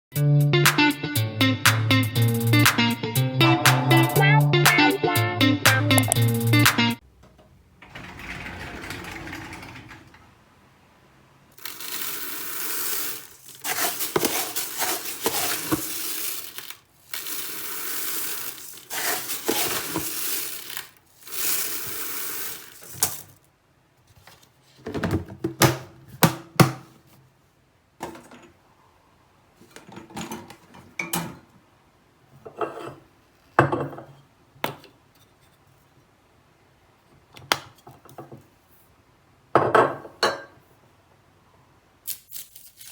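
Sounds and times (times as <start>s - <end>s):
rice grains pouring and rattling: 11.6s - 23.4s.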